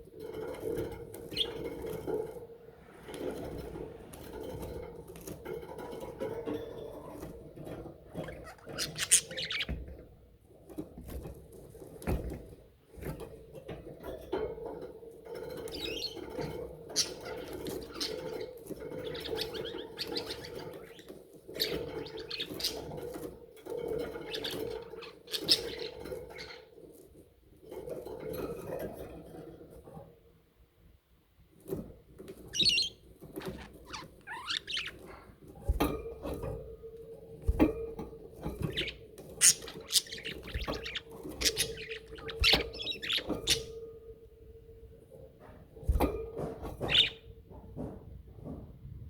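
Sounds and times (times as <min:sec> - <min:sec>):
budgerigars chattering and warbling: 0:01.3 - 0:01.7, 0:08.2 - 0:09.7, 0:17.0 - 0:22.9, 0:24.2 - 0:26.6, 0:32.6 - 0:35.1, 0:38.6 - 0:43.8, 0:46.8 - 0:47.2.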